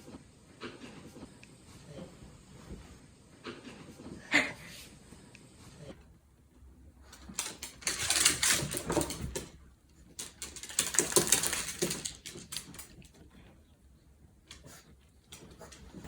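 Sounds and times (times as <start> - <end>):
dog claws clicking on hard floor: 7.0 - 13.5, 14.4 - 16.0.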